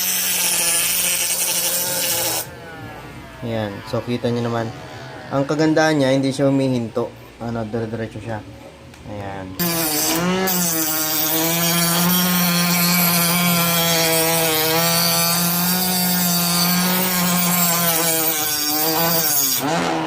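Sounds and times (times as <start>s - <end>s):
knife sharpener motor grinding: 0.0s - 2.5s, 9.6s - 20.0s.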